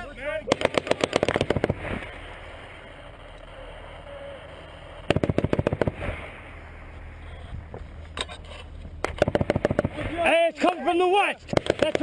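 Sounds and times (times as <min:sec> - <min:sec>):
dull background rumble: 0:00.0 - 0:12.0
automatic gunfire: 0:00.5 - 0:01.8, 0:05.1 - 0:06.0, 0:09.0 - 0:10.0.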